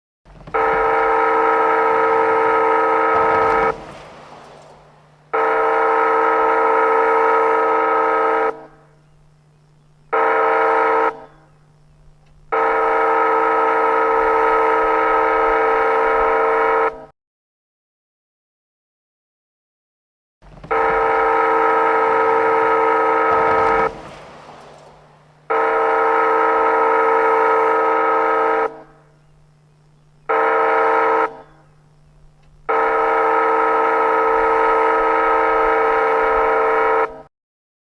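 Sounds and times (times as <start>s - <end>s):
railroad crossing horn blasts: 0.3s - 9.2s, 10.1s - 17.1s, 20.5s - 37.3s.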